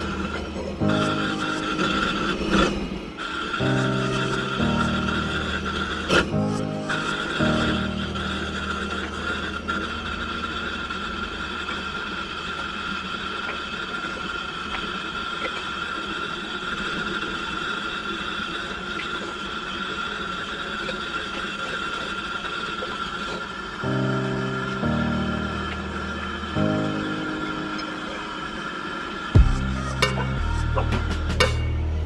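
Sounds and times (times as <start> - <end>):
steady high tone: 0.0 - 14.0, 23.6 - 32.0
propane torch rushing: 0.0 - 29.9.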